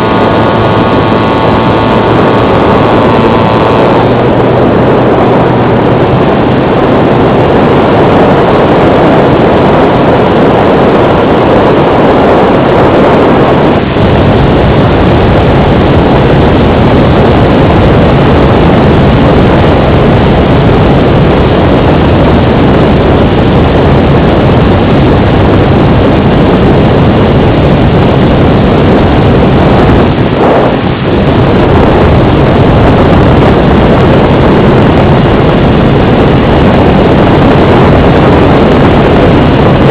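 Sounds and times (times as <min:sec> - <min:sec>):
model aircraft motor and propeller: 0:00.0 - 0:14.4
wind rushing over microphone: 0:00.0 - 0:39.9.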